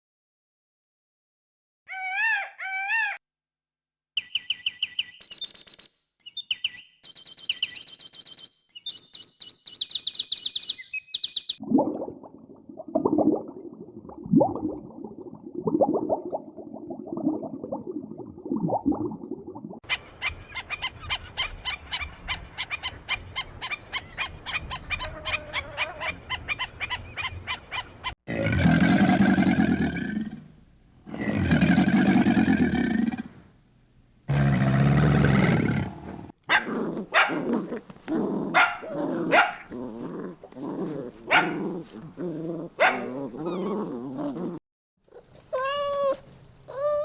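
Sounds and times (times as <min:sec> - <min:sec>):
long loud animal calls: 0:01.9 - 0:03.2
low grunting animal calls: 0:34.3 - 0:44.6.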